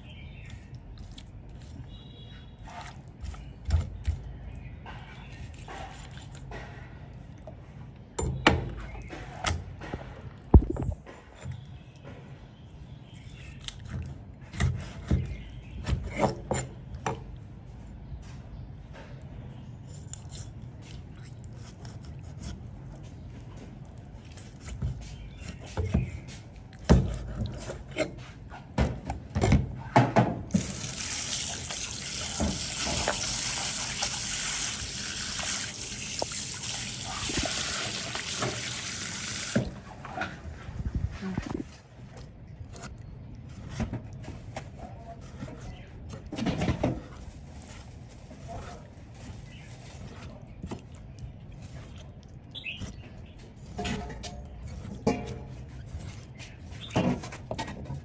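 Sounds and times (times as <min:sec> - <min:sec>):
water tap running: 0:30.6 - 0:39.7.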